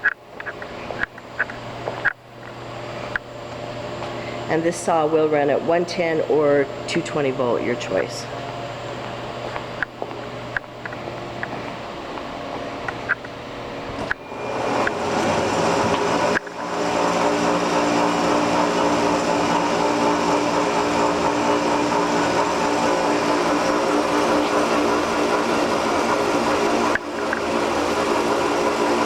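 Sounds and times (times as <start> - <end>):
band saw running: 14.0 - 29.0.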